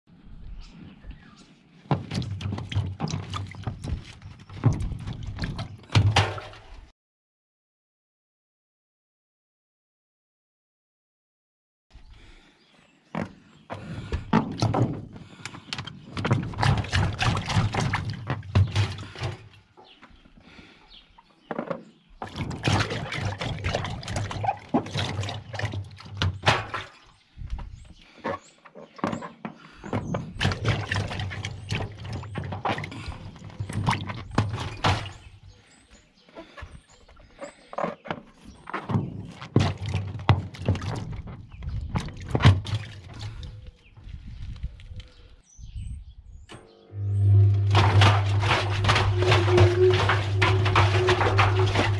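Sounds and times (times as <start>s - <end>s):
washing machine drum turning: 46.5s - 51.9s.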